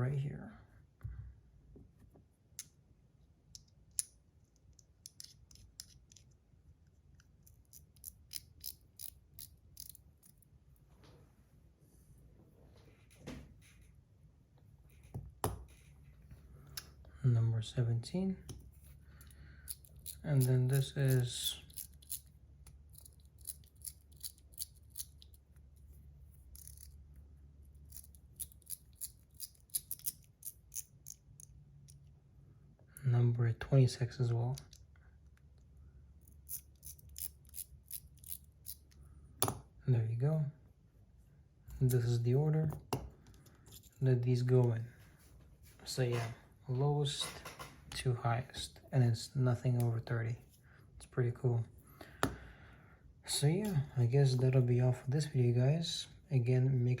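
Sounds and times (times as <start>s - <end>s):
small metal objects clicking: 7.4s - 10.4s, 19.2s - 25.4s, 26.5s - 27.0s, 27.9s - 32.0s.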